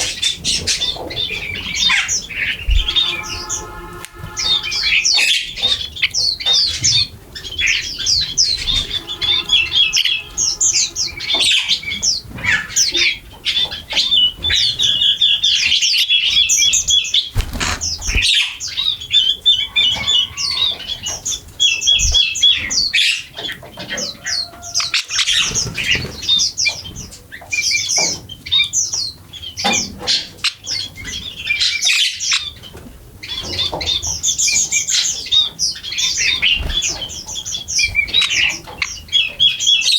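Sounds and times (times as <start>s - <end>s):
flock of birds chirping: 0.0s - 39.9s
wings fluttering: 2.6s - 5.0s, 17.3s - 18.7s, 21.9s - 22.4s, 36.1s - 38.4s.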